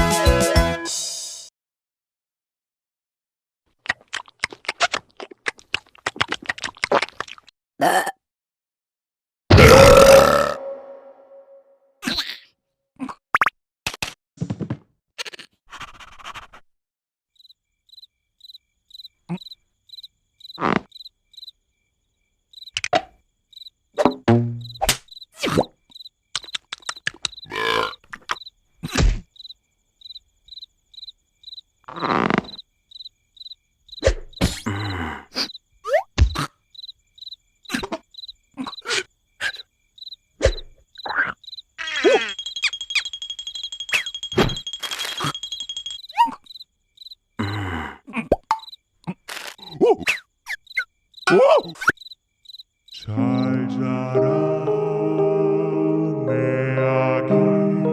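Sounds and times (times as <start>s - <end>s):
cricket chirping: 17.3s - 53.6s
cartoon character noises: 41.1s - 42.4s, 51.3s - 52.0s.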